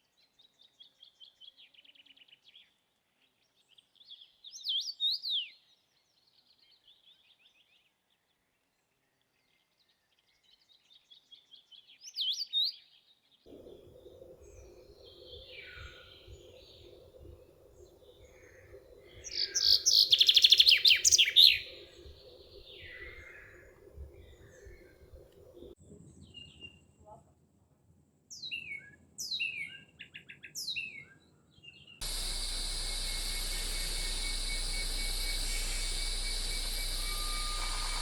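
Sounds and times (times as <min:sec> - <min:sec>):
bird rapid trill: 0:13.5 - 0:24.9, 0:32.0 - 0:38.0
songbirds singing: 0:13.5 - 0:25.8, 0:32.0 - 0:38.0
steady low hum: 0:13.5 - 0:25.8, 0:32.0 - 0:38.0.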